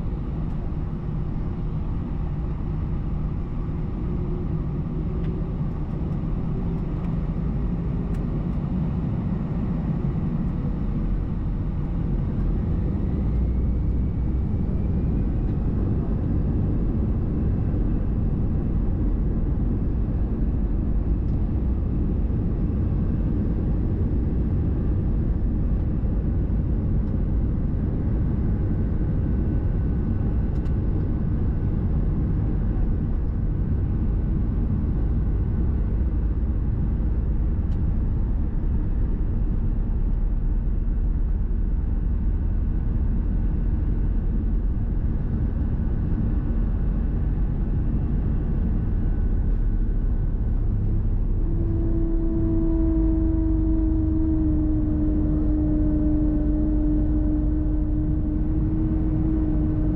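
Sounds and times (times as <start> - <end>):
jet engine howl: 0.0 - 59.9
jet engines roaring in cabin: 0.0 - 59.9.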